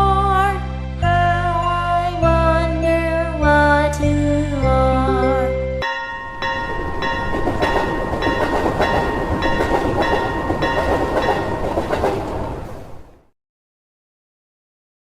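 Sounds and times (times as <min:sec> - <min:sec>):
level crossing bell clanging: 0:05.8 - 0:13.0
train rumbling past: 0:05.8 - 0:13.3.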